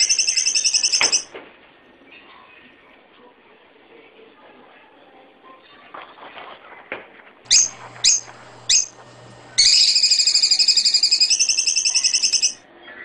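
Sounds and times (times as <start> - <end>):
shrew chirping: 0.0 - 1.3, 7.5 - 12.6
shrew fast-pulsing trill: 7.5 - 12.6.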